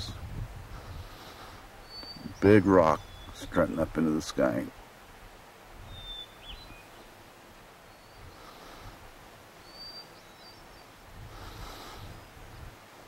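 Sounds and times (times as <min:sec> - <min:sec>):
soft hiss: 0:00.0 - 0:13.0
soft rush of noise: 0:00.0 - 0:13.0
small bird whistled call: 0:01.8 - 0:02.4, 0:05.9 - 0:07.0, 0:09.6 - 0:10.9.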